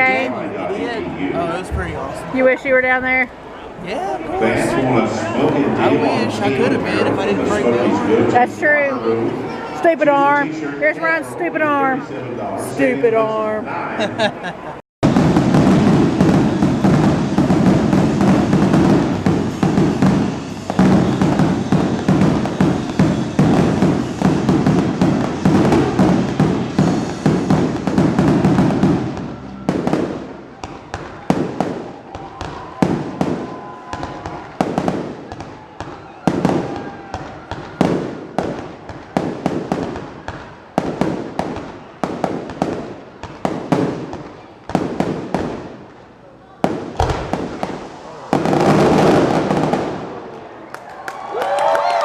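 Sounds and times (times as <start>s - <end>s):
fireworks bangs and crackle: 15.0s - 50.6s.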